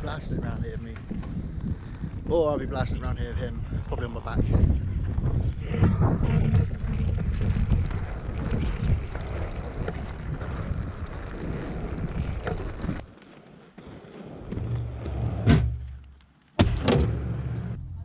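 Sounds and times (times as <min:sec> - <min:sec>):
wind buffeting microphone: 0:00.0 - 0:13.1.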